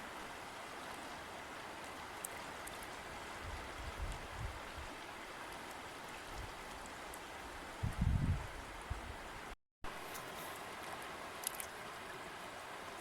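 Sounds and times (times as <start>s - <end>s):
river water rushing: 0.0s - 7.9s, 8.6s - 13.0s.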